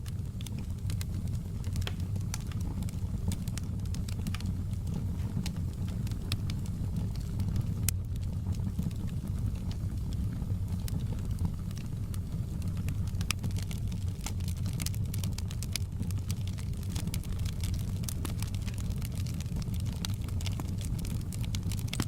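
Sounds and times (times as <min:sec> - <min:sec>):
fire crackling and popping: 0:00.0 - 0:22.0.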